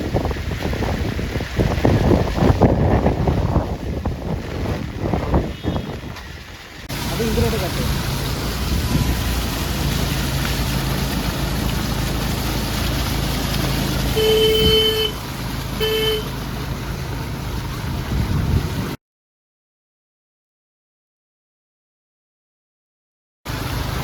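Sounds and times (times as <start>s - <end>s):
wind buffeting microphone: 0.0s - 14.9s, 16.6s - 19.0s
road traffic engine rumble: 0.0s - 19.0s, 23.5s - 24.0s
vehicle horn honking: 5.4s - 6.1s, 14.2s - 15.2s, 15.8s - 16.3s.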